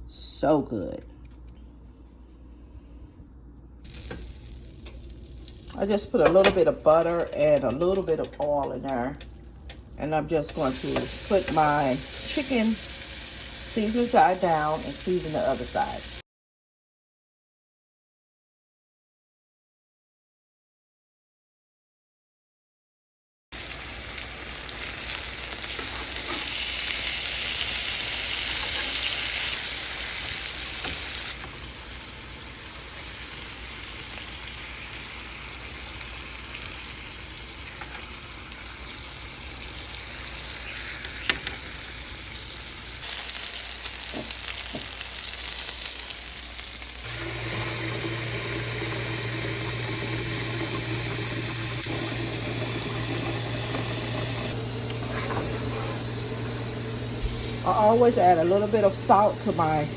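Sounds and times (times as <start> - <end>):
chicken sizzling in a pan: 3.9 - 7.4, 9.1 - 16.2, 23.6 - 59.9.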